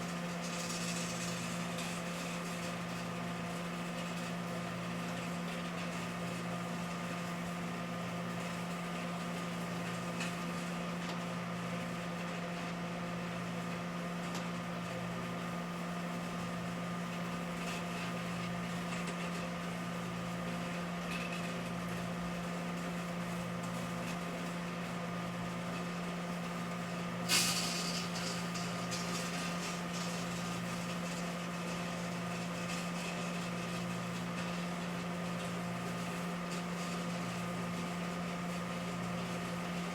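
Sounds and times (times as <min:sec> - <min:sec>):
microwave oven humming: 0:00.0 - 0:39.9.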